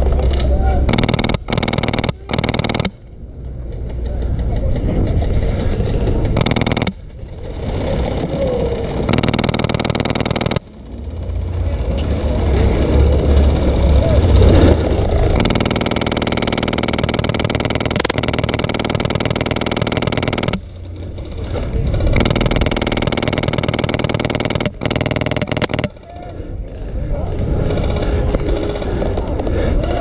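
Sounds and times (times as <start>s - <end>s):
airsoft gun full-auto bursts: 0.8s - 3.2s, 6.3s - 11.4s, 14.7s - 26.4s, 27.5s - 29.7s.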